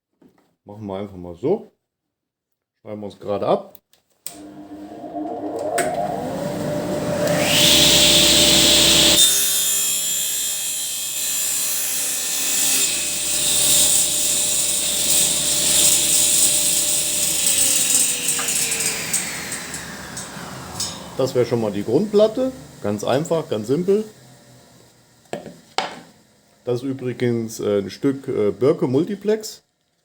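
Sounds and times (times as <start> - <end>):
saw blade winding down: 4.3 - 25.3
circular saw cutting plywood: 4.3 - 29.4.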